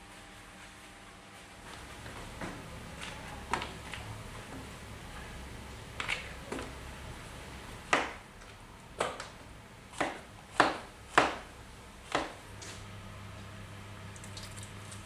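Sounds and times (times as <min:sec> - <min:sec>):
sharp knocks: 0:05.9 - 0:12.8.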